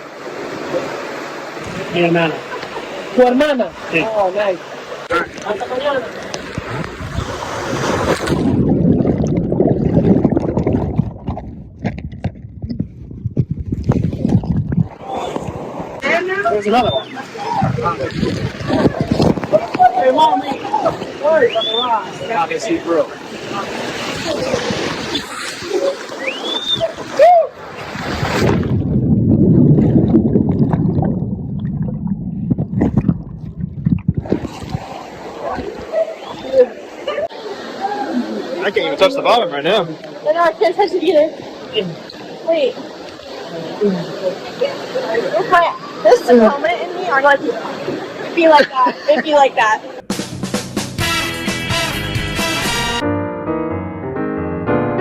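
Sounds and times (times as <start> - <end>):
water splashing and sloshing: 0.0 - 50.1
muffled crackling churn: 4.9 - 36.3.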